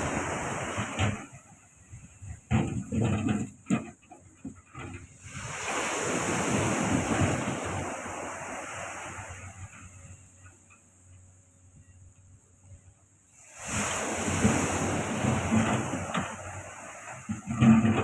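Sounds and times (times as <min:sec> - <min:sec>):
sea wave breaking: 0:00.0 - 0:01.4, 0:05.2 - 0:10.0, 0:13.4 - 0:18.0.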